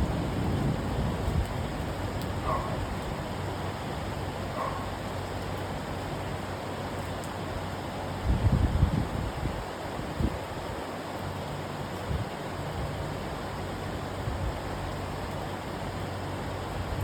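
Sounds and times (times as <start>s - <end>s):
thunder rumbling: 0.0s - 3.6s
heavy rain: 0.0s - 17.0s.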